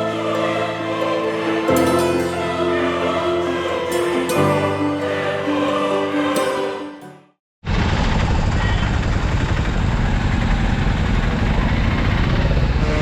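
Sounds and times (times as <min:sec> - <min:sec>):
choir singing sustained chords: 0:00.0 - 0:07.4.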